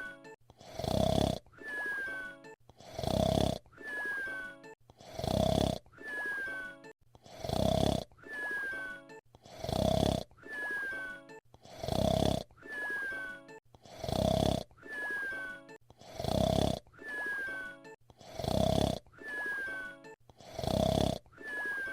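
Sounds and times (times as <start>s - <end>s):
cartoon snore: 0.0s - 2.2s, 2.8s - 4.4s, 5.0s - 6.6s, 7.2s - 15.4s, 16.0s - 17.6s, 18.2s - 21.9s
falling whistle: 1.6s - 2.4s, 3.8s - 4.6s, 6.0s - 6.9s, 8.3s - 9.0s, 10.4s - 11.4s, 12.6s - 13.5s, 14.8s - 15.6s, 17.0s - 17.8s, 19.2s - 20.2s, 21.4s - 21.9s.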